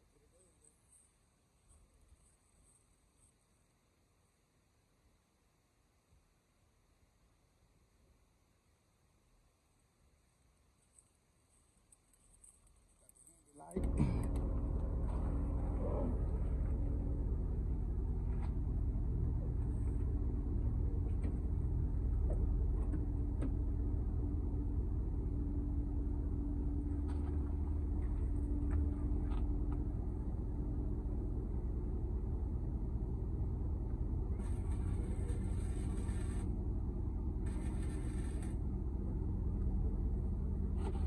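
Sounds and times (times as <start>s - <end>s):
car engine running: 13.5s - 41.0s.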